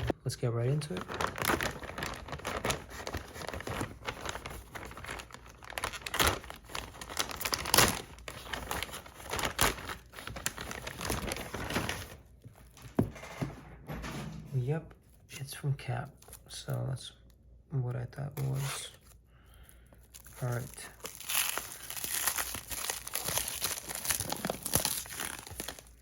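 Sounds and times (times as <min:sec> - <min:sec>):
packaging crinkling and rustling: 0:00.0 - 0:13.2, 0:19.9 - 0:26.0.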